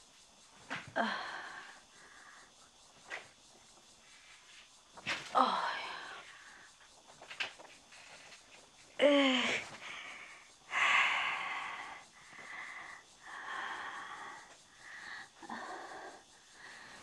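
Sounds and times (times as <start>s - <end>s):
person breathing heavily: 0.9s - 2.8s, 9.0s - 17.0s.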